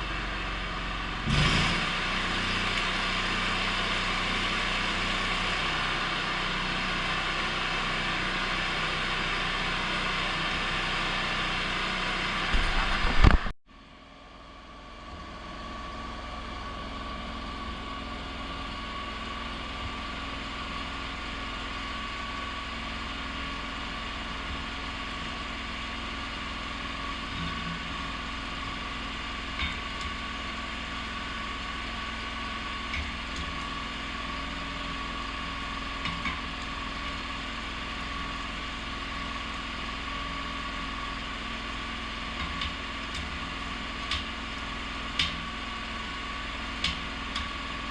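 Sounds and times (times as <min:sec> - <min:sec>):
welding machine humming: 0:19.6 - 0:47.9.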